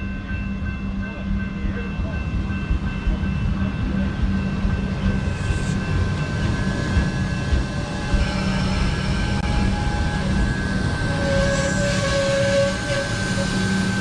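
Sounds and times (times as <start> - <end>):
train rail rumble: 0.0 - 14.0
train motors whining: 3.9 - 14.0.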